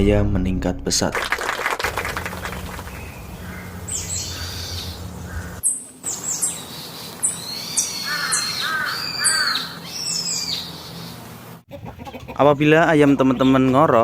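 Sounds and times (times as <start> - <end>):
low hum: 0.0 - 8.1
chicks peeping: 2.3 - 14.0
chicken clucks: 11.7 - 14.0.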